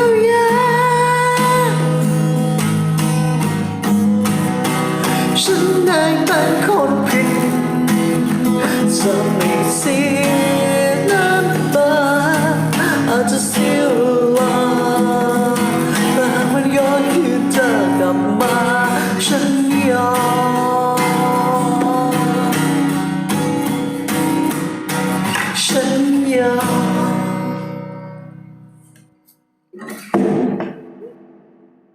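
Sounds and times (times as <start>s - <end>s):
person singing: 0.0s - 2.2s, 5.1s - 23.0s, 25.3s - 27.8s
pop ballad backing track: 0.0s - 28.4s
acoustic guitar: 0.0s - 31.9s.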